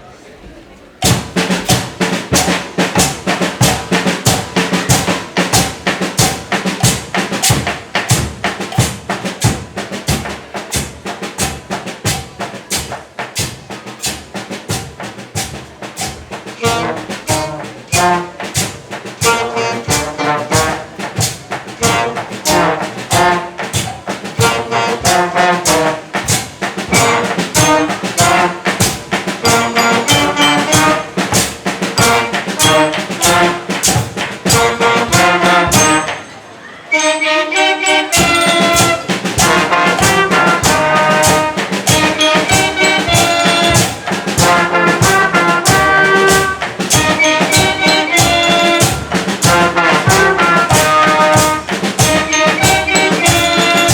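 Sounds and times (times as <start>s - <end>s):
marching band drums: 1.0s - 36.4s, 37.0s - 53.9s
brass playing melody: 15.4s - 53.9s.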